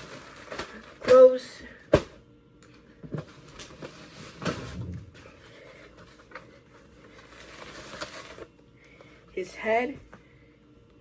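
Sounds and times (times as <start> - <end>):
packaging rustling: 0.0 - 1.3, 3.4 - 8.5.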